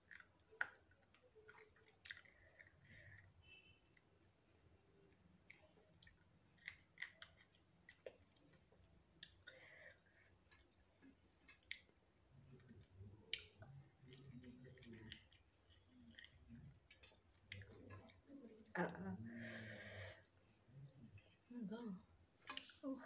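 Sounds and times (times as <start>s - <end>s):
person chewing: 0.0s - 3.4s, 5.1s - 18.3s.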